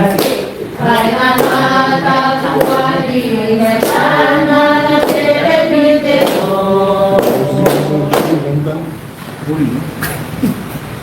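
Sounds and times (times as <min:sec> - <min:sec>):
choir singing a hymn: 0:00.8 - 0:08.7.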